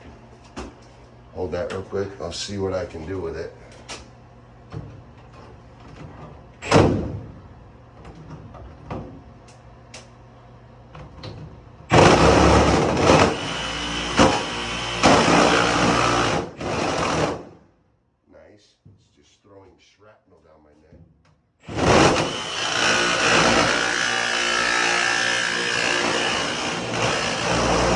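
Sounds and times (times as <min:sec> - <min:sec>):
jigsaw cutting sheet metal: 0:11.9 - 0:17.6, 0:21.6 - 0:27.9.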